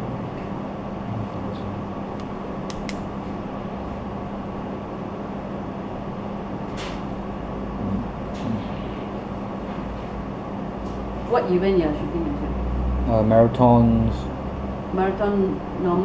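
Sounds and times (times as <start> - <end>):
room tone hum and hiss: 0.0 - 16.0.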